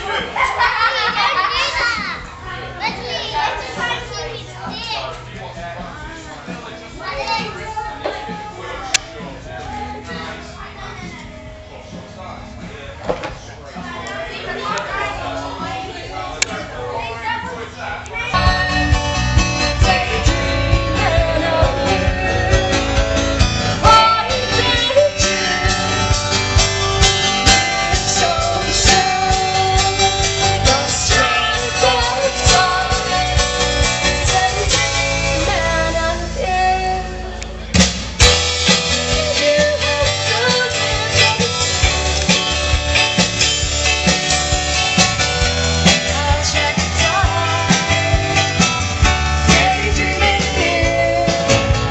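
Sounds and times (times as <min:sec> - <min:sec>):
guitar: 0:00.0 - 0:51.9
person singing: 0:18.4 - 0:37.6, 0:38.6 - 0:42.7, 0:45.8 - 0:51.9.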